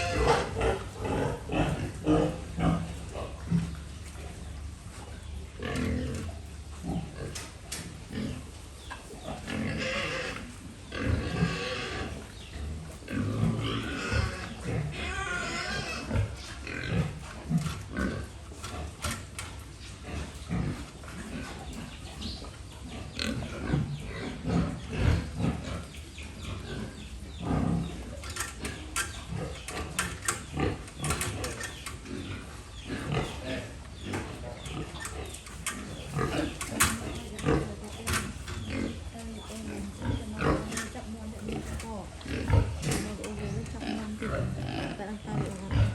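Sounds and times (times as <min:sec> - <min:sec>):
pigs grunting and crying out: 0:00.0 - 0:03.7, 0:09.1 - 0:19.3.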